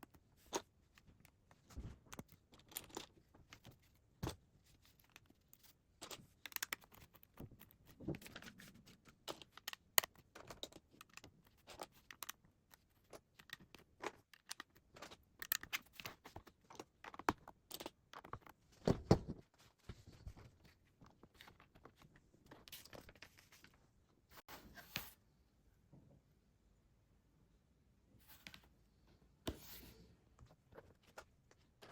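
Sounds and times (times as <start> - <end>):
plastic pieces clicking and rattling: 2.1 - 3.8, 4.9 - 18.5.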